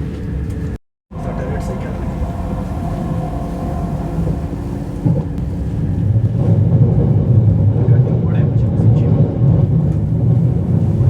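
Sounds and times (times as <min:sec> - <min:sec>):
low train rumble: 0:00.0 - 0:11.0
train humming tones: 0:00.6 - 0:07.9.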